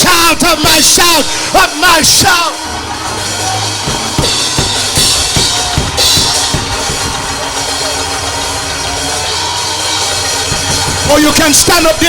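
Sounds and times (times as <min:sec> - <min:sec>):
drum kit beat: 0:02.7 - 0:12.0.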